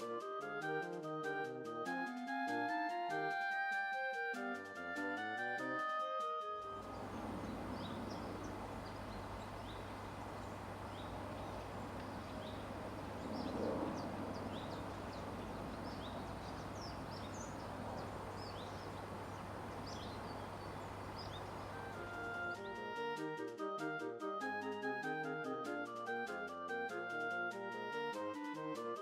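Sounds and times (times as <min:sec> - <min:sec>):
steady background hum: 0:06.8 - 0:22.6
small birds chirping: 0:06.8 - 0:23.0.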